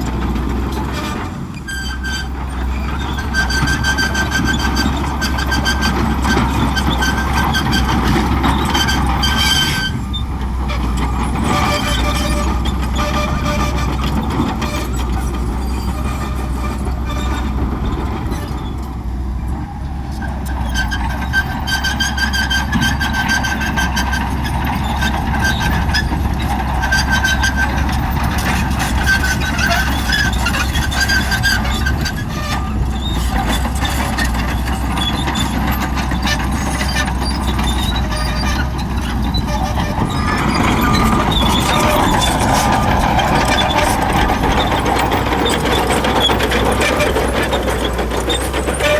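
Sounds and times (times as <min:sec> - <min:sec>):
diesel engine under load: 0:00.0 - 0:48.9
steel tracks clattering: 0:22.5 - 0:48.9
high squeal from running gear: 0:29.0 - 0:48.9.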